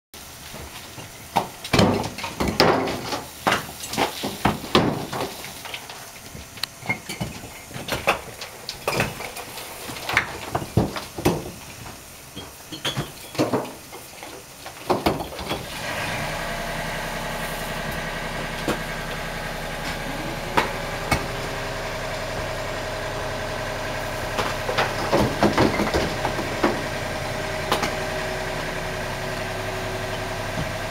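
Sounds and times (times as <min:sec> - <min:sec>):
engine idling: 0:15.6 - 0:30.9
bricks knocking and clattering: 0:24.4 - 0:26.8.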